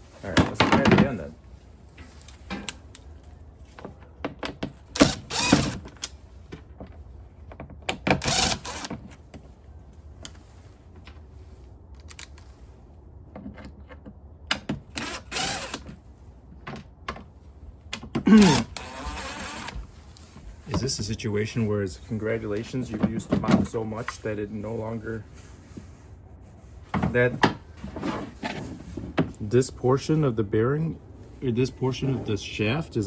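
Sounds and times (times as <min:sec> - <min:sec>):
scraping sounds: 0:18.4 - 0:33.0.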